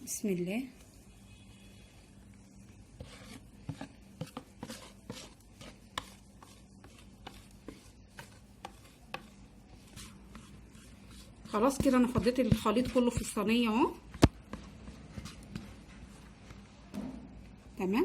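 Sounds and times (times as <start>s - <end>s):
batter scraped from bowl: 3.0s - 16.1s
utensil knocking bowl: 11.6s - 14.4s.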